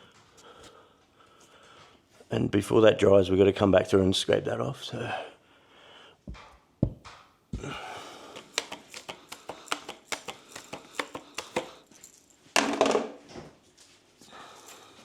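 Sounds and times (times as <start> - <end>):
scraper knocking and scraping wall: 6.3 - 11.8.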